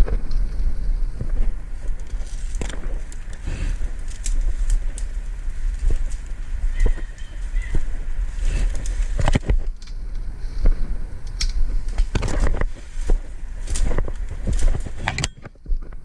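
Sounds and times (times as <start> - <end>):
wind buffeting microphone: 0.0 - 16.0
knocks and rustles: 8.6 - 10.0, 10.6 - 16.0.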